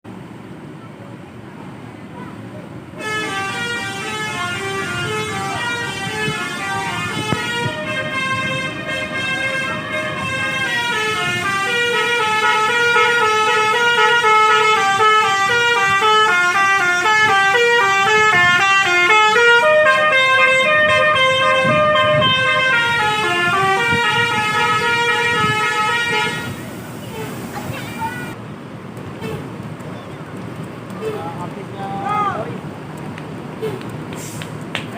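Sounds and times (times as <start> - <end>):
bus air horn melody: 3.0 - 27.3.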